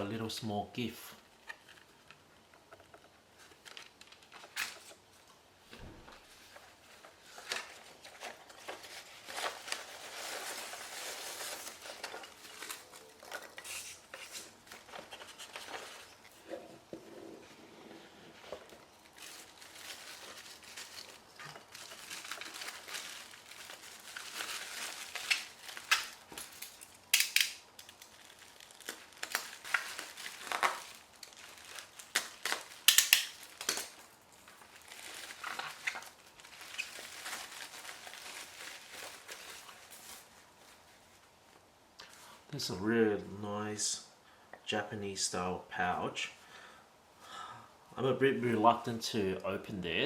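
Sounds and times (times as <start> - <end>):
packaging crinkling by hand: 1.4 - 5.4, 6.1 - 16.9, 18.3 - 41.7.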